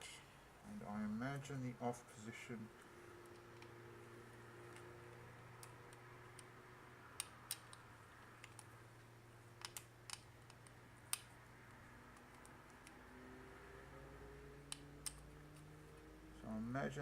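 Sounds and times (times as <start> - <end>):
faint low hum: 0.0 - 17.0
plastic parts clicking: 7.1 - 8.7, 9.6 - 11.2.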